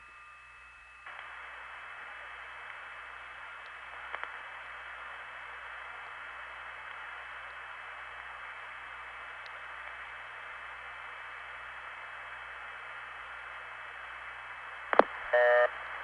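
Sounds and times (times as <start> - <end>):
faint steady high tone: 0.0 - 1.1
telephone line hiss: 0.0 - 8.1, 15.0 - 15.8.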